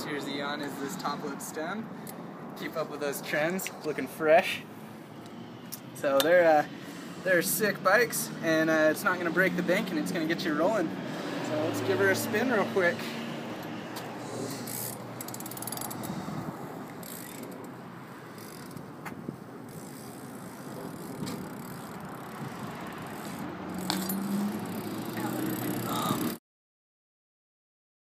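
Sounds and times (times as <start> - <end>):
bike rolling: 8.1 - 26.4
bike rattles and clicks: 13.5 - 26.4.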